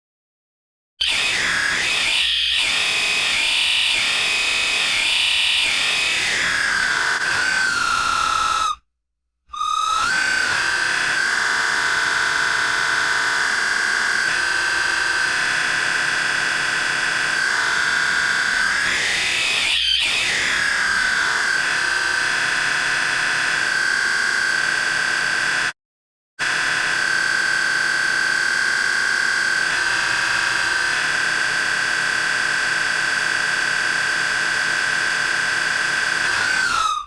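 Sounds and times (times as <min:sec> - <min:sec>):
shrill buzzy screech: 0:01.0 - 0:08.8, 0:09.5 - 0:15.6, 0:16.3 - 0:22.9, 0:34.4 - 0:37.0.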